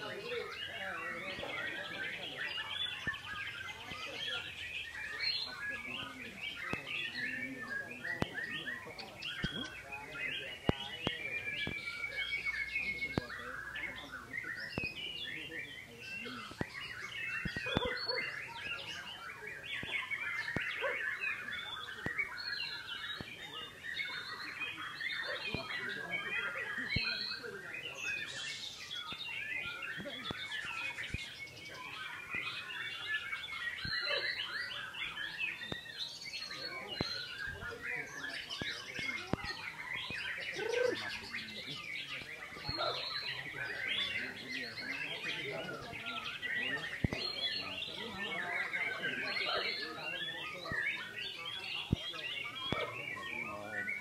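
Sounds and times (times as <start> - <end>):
birds singing chirps and trills: 0.0 - 54.0
sharp bird clicks: 9.2 - 9.8, 10.6 - 13.4, 16.0 - 18.8.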